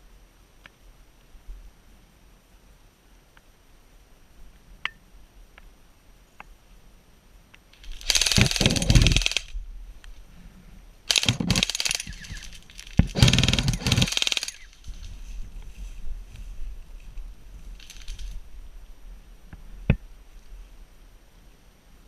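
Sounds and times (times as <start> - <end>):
airsoft gun firing full-auto: 7.8 - 9.5, 11.1 - 14.8.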